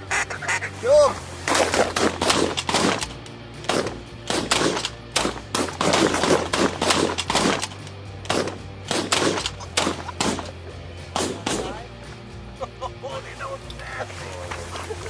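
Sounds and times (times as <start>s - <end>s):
shotguns firing: 1.4s - 10.5s.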